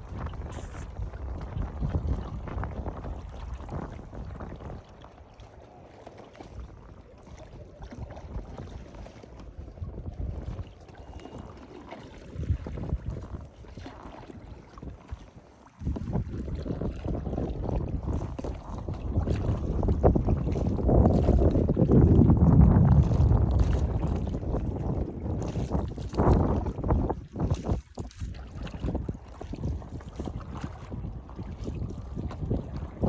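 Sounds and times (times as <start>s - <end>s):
wind gusting across microphone: 0.0s - 4.8s, 15.8s - 33.0s.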